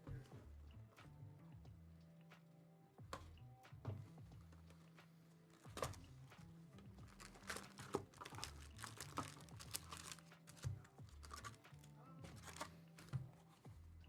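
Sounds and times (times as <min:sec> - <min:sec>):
quiet background music: 0:00.0 - 0:14.0
card wrappers crinkling and tearing: 0:05.5 - 0:06.3, 0:07.0 - 0:13.1.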